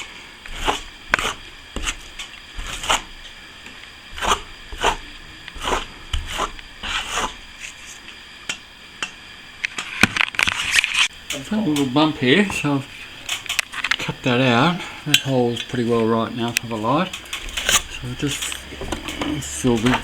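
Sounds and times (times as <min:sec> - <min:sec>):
plastering tool scraping plaster: 0:00.0 - 0:03.1, 0:04.1 - 0:08.0, 0:17.4 - 0:20.0.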